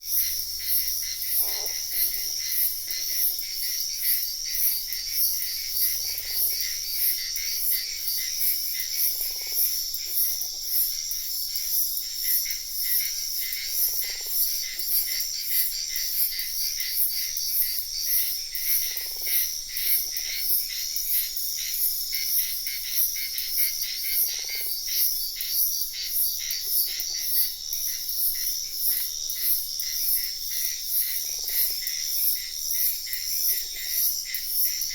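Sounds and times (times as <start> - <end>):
crickets chirring: 0.0 - 34.9
frog croaking: 0.6 - 3.5, 5.4 - 7.7, 31.1 - 31.8.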